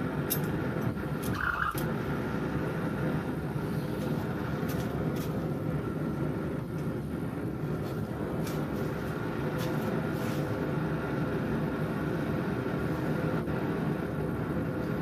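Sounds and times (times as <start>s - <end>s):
high squeal: 1.3s - 1.9s.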